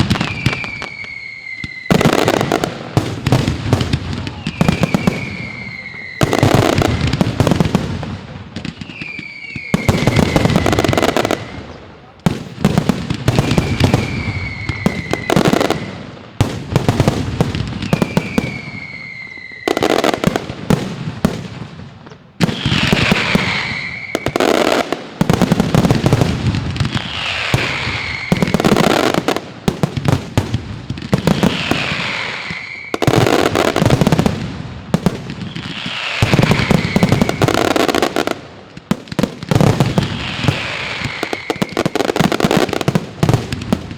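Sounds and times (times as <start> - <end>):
firework whistle falling in pitch: 0.0 - 2.5, 4.2 - 7.1, 8.7 - 11.8, 13.3 - 16.0, 17.8 - 20.2, 22.4 - 24.8, 26.9 - 29.0, 31.3 - 33.7, 35.5 - 38.0, 40.0 - 42.1
firework cracks and bangs: 0.0 - 43.9.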